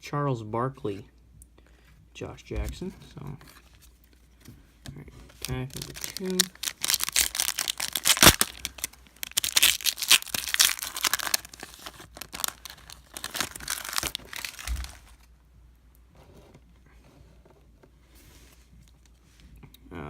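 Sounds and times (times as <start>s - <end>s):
wrapper tearing and crinkling: 5.4s - 15.3s.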